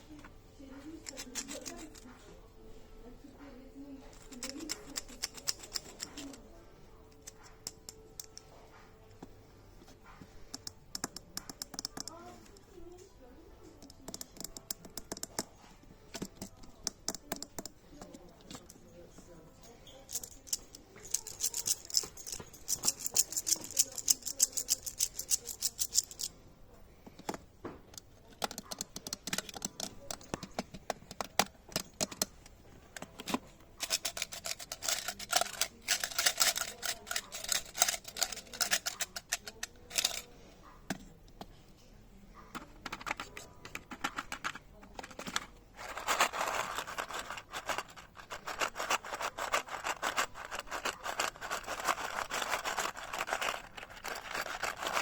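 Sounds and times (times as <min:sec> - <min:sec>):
scratchy rubbing: 0:20.0 - 0:26.3, 0:33.1 - 0:40.3, 0:42.8 - 0:55.0.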